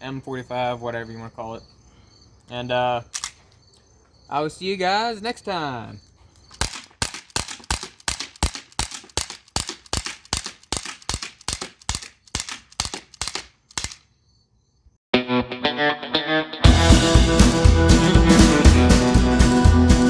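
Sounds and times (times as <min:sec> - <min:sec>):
air pistol shots: 0:03.2 - 0:03.4, 0:06.5 - 0:14.1
music: 0:15.1 - 0:20.0.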